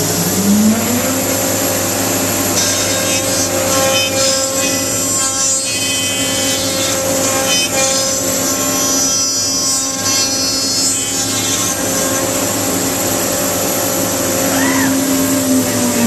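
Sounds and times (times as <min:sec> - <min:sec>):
woodworking router whining: 0:00.0 - 0:16.0.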